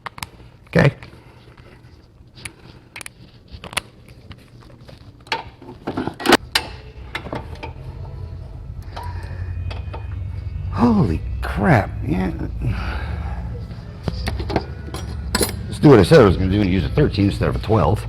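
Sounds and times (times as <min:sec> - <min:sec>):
low hum: 0:06.4 - 0:18.0.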